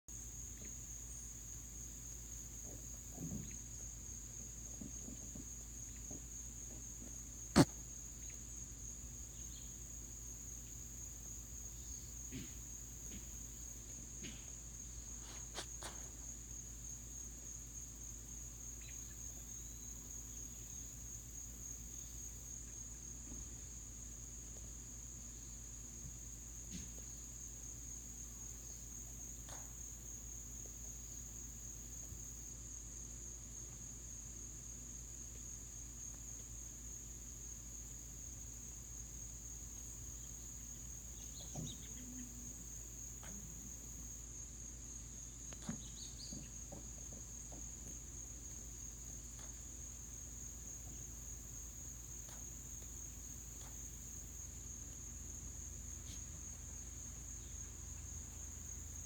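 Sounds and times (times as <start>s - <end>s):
crickets trilling: 0.1s - 59.0s.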